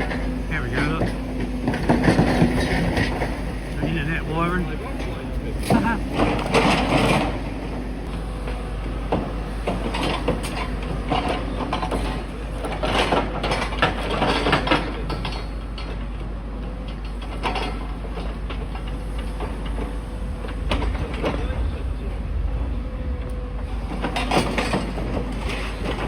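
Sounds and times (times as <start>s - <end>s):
clanks of metal and timber: 0.0s - 7.8s, 9.1s - 16.1s
excavator engine rumble: 0.0s - 26.0s.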